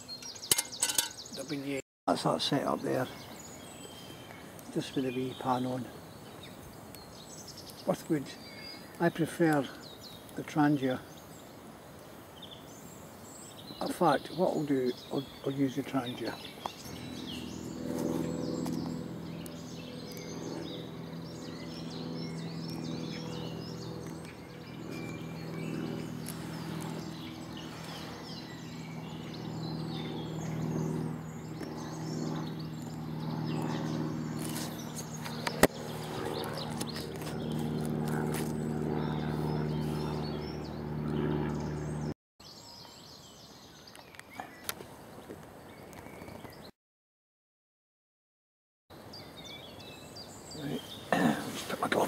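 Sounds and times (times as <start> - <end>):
small birds chirping: 0.0 - 46.7, 49.0 - 52.0
steady low hum: 16.8 - 42.1.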